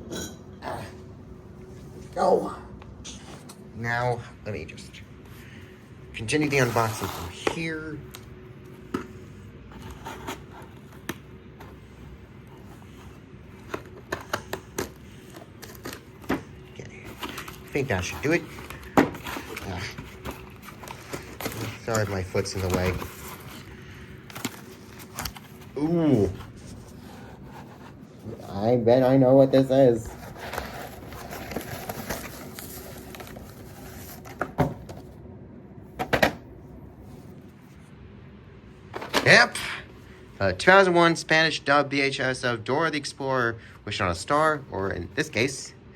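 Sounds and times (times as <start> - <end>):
packaging scraping and clicking: 12.5 - 25.7, 30.1 - 34.6.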